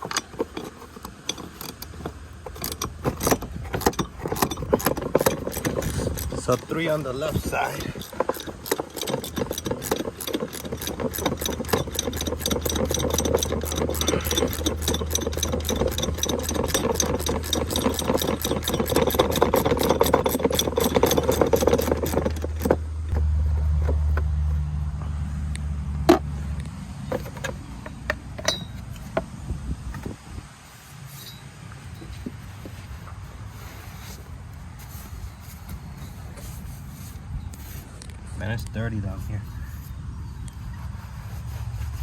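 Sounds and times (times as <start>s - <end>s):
power driver rattling: 0.0s - 24.3s.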